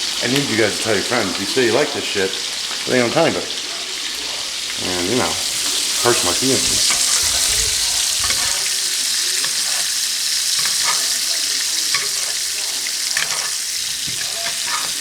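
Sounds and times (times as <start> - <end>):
steaks sizzling in oil: 0.0 - 15.0.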